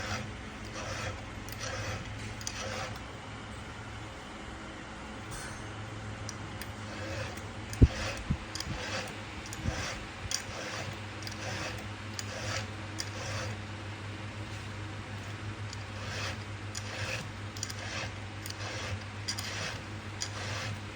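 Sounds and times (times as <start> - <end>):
file rasping on chainsaw chain: 0.0 - 3.0, 6.8 - 13.6, 15.7 - 20.8.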